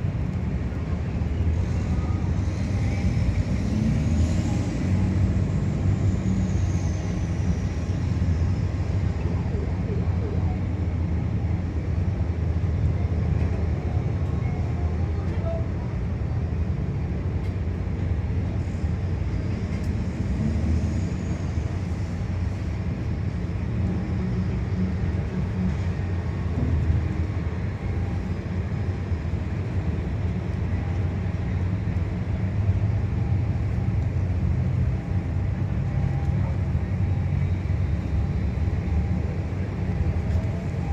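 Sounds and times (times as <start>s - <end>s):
ship engines rumbling: 0.0s - 40.9s.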